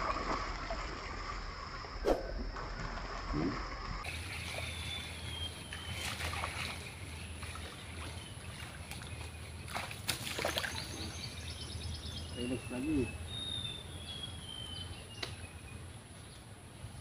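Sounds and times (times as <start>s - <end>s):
water splashing: 0.0s - 11.4s.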